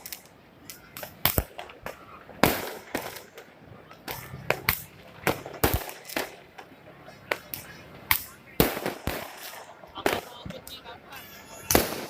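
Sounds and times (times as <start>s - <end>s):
fireworks banging: 0.0s - 12.0s.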